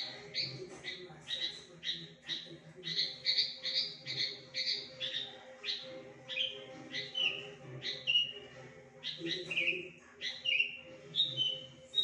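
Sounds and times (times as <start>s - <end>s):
lark singing: 0.0s - 12.0s.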